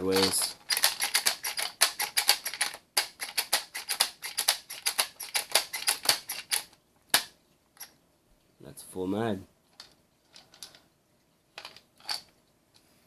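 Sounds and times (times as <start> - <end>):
cartridges clicking into magazine: 0.2 - 7.9.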